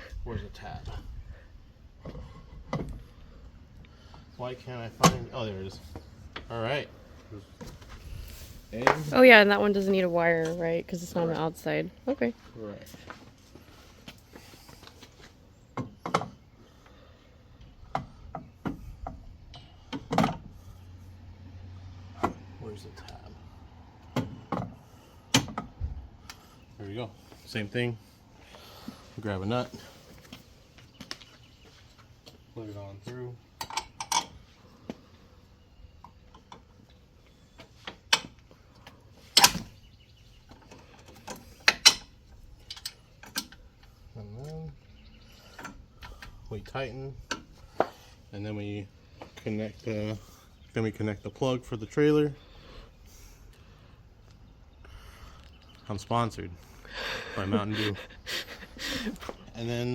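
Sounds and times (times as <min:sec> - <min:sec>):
metal parts clicking and clanking: 0:40.5 - 0:43.6.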